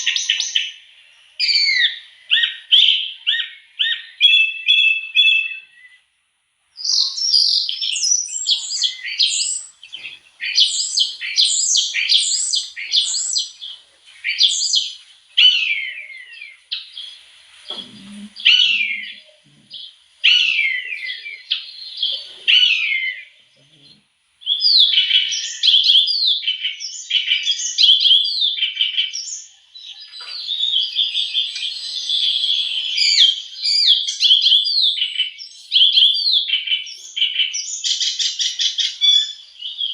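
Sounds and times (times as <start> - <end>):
birdsong chirps and whistles: 0.0 - 39.9.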